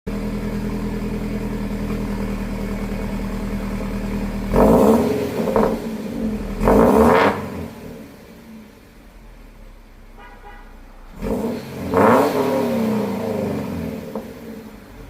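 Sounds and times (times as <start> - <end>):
car engine idling: 0.1 - 15.0
engine revving: 1.9 - 8.6, 10.5 - 15.0.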